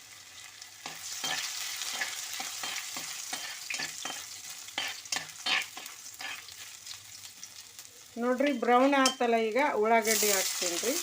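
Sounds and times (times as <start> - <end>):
garlic sizzling in hot oil: 0.0 - 11.0
spatula stirring strokes: 0.8 - 6.9.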